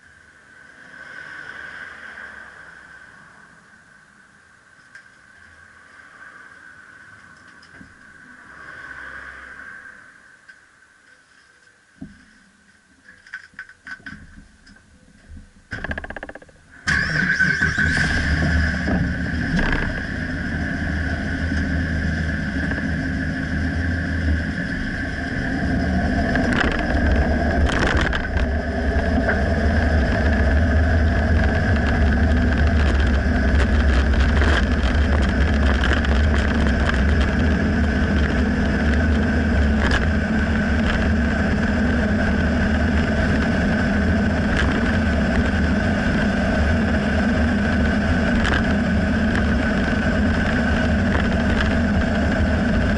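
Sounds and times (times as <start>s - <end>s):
truck engine droning: 15.7s - 52.9s.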